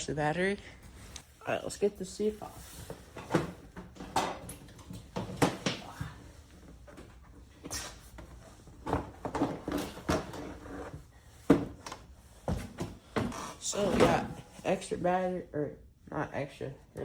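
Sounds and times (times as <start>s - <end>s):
plastic and metal clunks and rattles: 2.9s - 7.6s, 8.2s - 14.4s.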